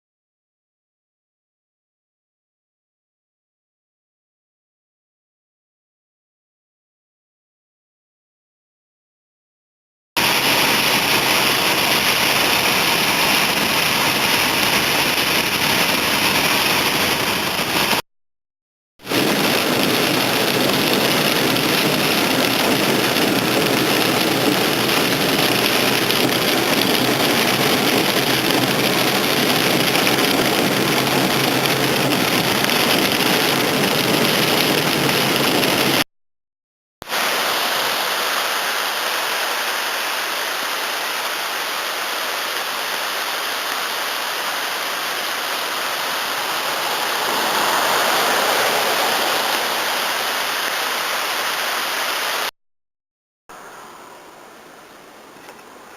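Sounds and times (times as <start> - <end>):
engine and road rumble: 10.2 - 18.0, 19.0 - 36.1, 43.6 - 52.5
heavy rain pouring on a vehicle: 10.2 - 18.0, 19.0 - 36.0, 37.1 - 52.5.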